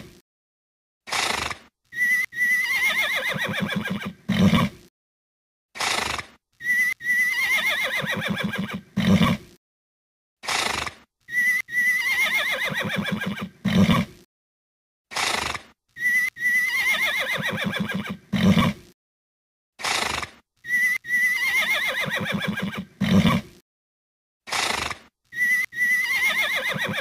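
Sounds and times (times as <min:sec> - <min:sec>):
horse neighing: 0:01.3 - 0:04.8, 0:05.9 - 0:09.5, 0:11.4 - 0:14.2, 0:15.3 - 0:18.8, 0:20.8 - 0:23.5, 0:24.7 - 0:27.0.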